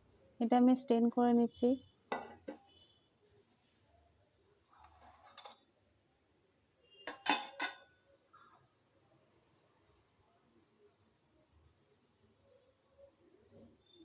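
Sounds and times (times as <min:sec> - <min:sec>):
kitchen utensils clinking: 0:02.1 - 0:02.6, 0:07.1 - 0:07.9.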